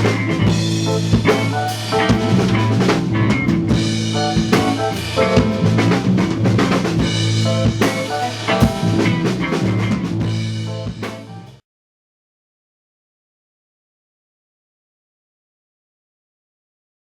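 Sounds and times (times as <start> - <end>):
rock music with drums: 0.0 - 11.6.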